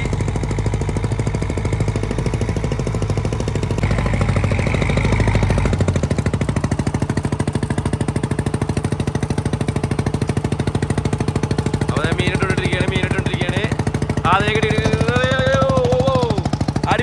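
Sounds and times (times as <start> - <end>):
diesel boat engine chugging: 0.0 - 17.0.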